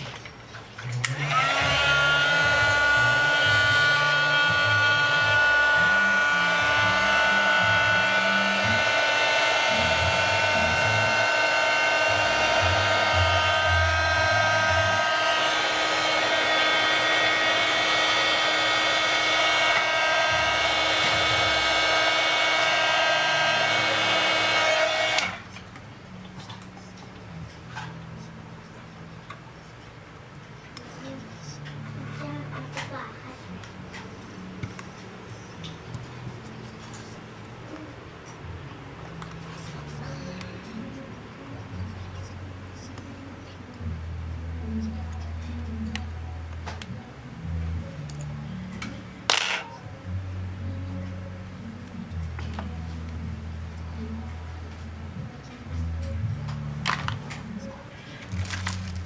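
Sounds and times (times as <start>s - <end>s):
hot-air blower running: 0.8s - 25.6s
whine of air blower: 0.8s - 25.6s.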